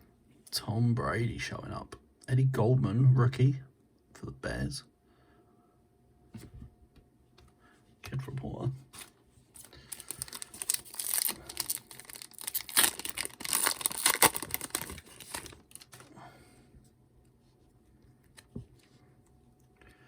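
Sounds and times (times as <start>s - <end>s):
wrapper tearing and crinkling: 9.0s - 16.1s.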